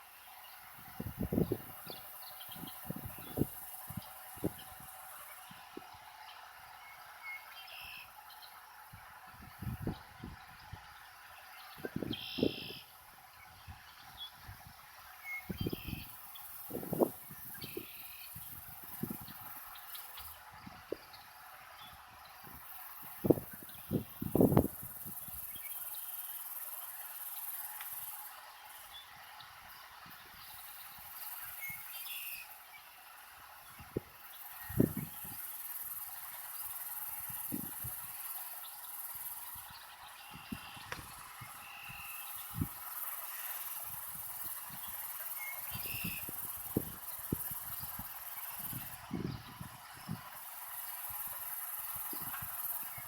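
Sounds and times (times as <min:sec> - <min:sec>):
high insect chirring: 0:34.2 - 0:53.0.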